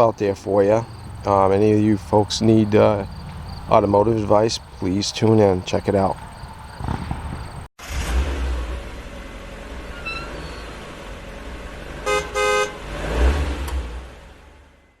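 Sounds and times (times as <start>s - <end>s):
low outdoor rumble: 0.0s - 12.0s
horn toots: 9.7s - 10.9s, 11.9s - 13.8s.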